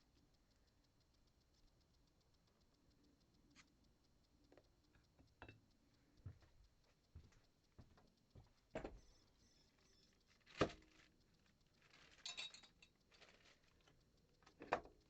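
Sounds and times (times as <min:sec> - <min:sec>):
small metallic clinks: 0:04.9 - 0:05.7, 0:10.8 - 0:15.0.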